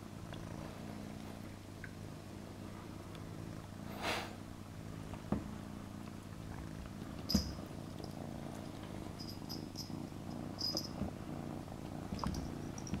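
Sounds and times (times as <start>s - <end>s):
kitten purring: 0.0s - 13.0s
kitten sneezing: 4.0s - 4.4s.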